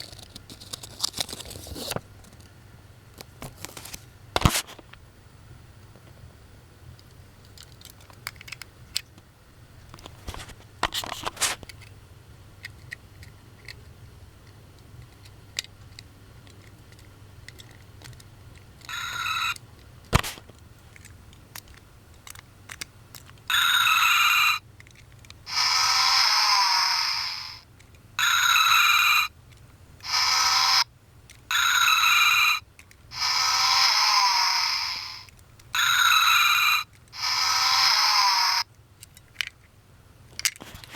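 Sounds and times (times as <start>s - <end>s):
handling clicks and rustle: 0.0s - 5.0s, 7.0s - 12.0s, 19.8s - 23.5s, 39.0s - 40.9s
toy keychain playing recorded clip: 16.6s - 19.7s, 31.5s - 39.5s.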